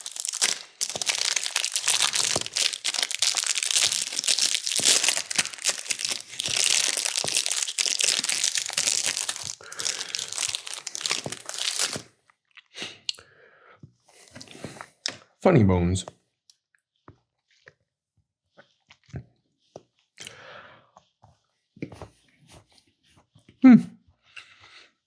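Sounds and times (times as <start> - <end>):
plastic wrapper crinkling: 0.0 - 12.0.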